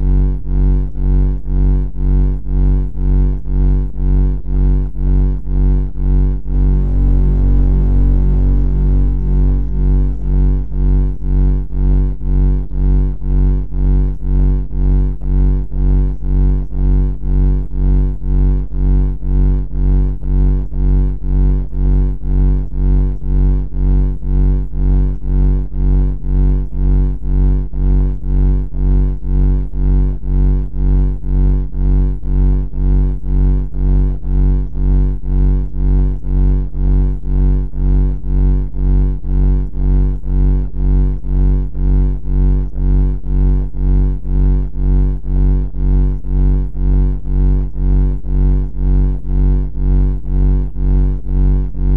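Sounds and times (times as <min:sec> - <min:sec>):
low throbbing buzzing drone: 0:00.0 - 0:51.9.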